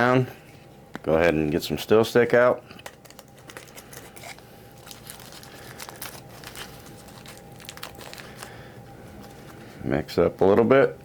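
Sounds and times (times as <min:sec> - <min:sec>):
faint steady hum: 0:00.0 - 0:11.0
plastic wrapper crinkling: 0:02.7 - 0:08.7.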